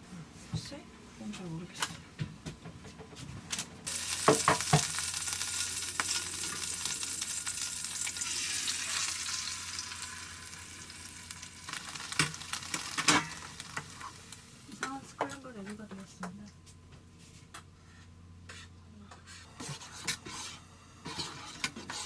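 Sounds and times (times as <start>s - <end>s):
egg sizzling in frying pan: 3.9s - 14.8s.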